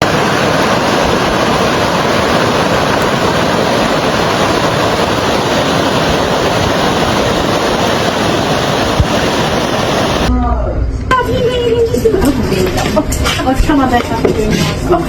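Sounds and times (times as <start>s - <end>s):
floodwater rushing: 0.0s - 10.3s.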